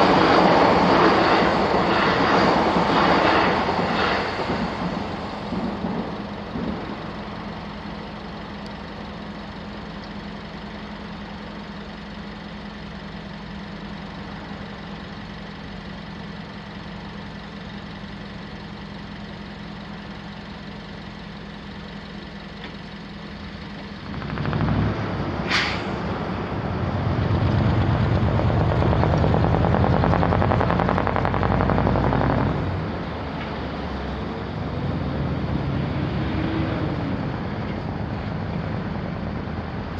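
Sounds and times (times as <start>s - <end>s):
heavy vehicle passing: 24.0s - 38.1s.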